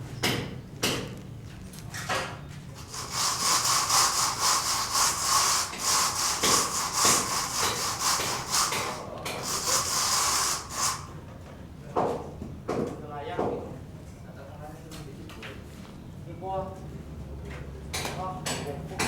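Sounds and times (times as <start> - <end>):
hand tool rasping on hard surface: 2.8 - 11.2.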